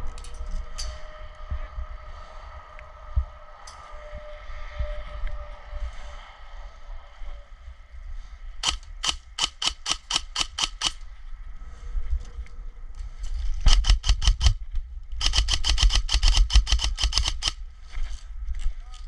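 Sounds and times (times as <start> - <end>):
airsoft guns firing: 8.6 - 11.0.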